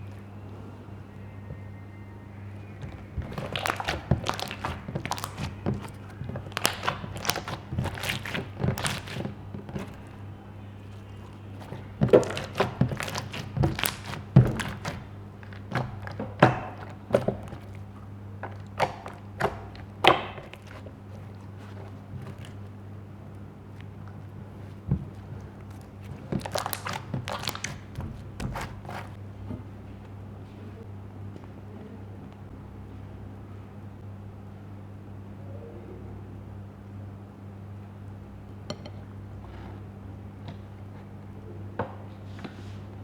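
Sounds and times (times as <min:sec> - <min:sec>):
low electrical hum: 0:00.0 - 0:43.0
hands squeezing sticky slime: 0:02.6 - 0:29.2.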